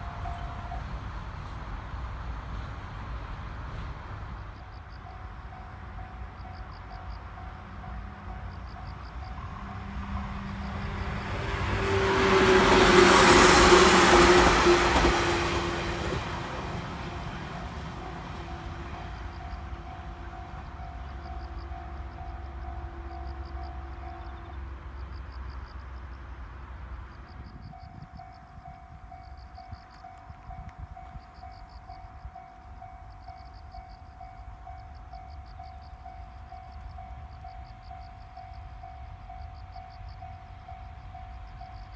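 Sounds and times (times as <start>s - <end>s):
insects chirping: 0.2s - 14.5s
level crossing warning bell: 4.7s - 24.6s, 27.7s - 41.9s
vehicle passing by: 9.1s - 19.7s.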